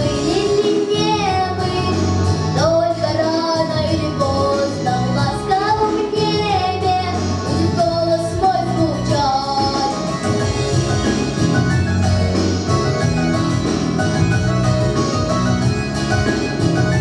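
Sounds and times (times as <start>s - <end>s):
young woman singing: 0.0s - 10.2s
instrumental backing music: 0.0s - 17.0s.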